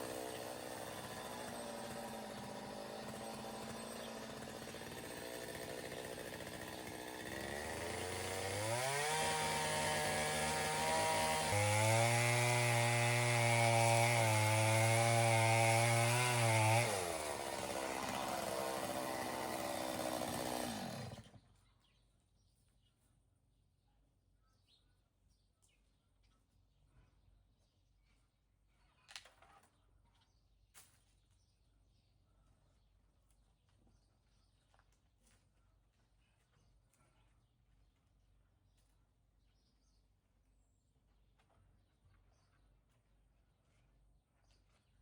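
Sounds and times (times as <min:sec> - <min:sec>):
chainsaw cutting wood: 0:00.0 - 0:21.4.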